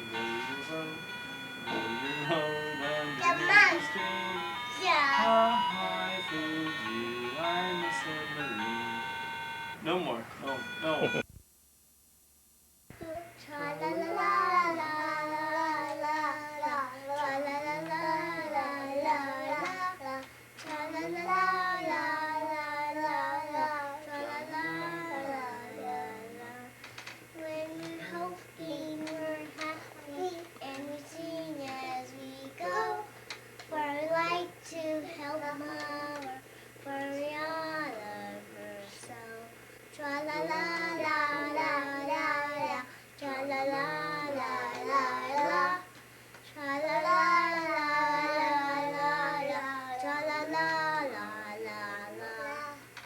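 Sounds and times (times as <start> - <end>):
child singing: 1.7 - 9.0, 12.9 - 26.8, 27.4 - 45.9, 46.5 - 52.9.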